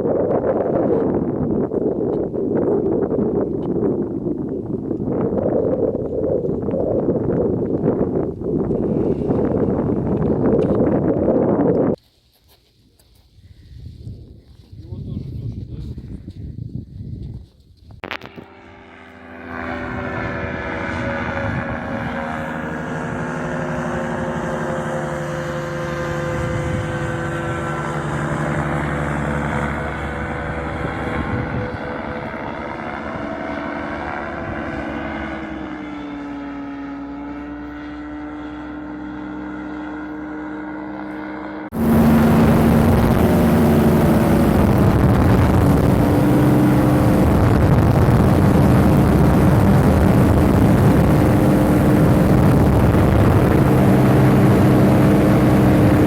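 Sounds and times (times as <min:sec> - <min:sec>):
strong rushing noise: 0:18.0 - 0:35.8, 0:39.1 - 0:56.0
paramotor engine drone: 0:18.0 - 0:56.0.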